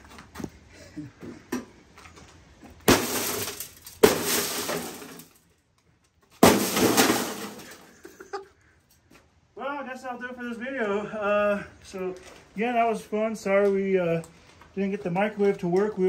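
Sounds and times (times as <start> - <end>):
glass door being smashed: 2.8 - 5.4, 6.4 - 8.0
shattering glass and falling shards: 2.8 - 5.5, 6.4 - 8.2.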